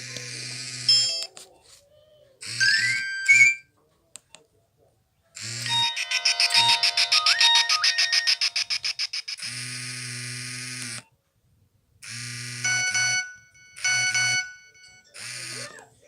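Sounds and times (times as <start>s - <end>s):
electronic ringtone melody: 2.4s - 3.6s, 5.6s - 9.6s, 12.6s - 15.7s
phone electronic tone: 2.4s - 3.6s, 5.6s - 9.6s, 12.3s - 15.8s
rising beeps: 5.7s - 9.4s, 12.7s - 15.0s.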